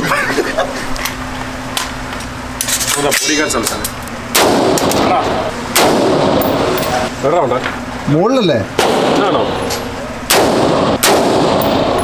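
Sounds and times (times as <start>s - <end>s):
gunshots with ringing echo: 4.3s - 6.8s, 8.8s - 12.0s.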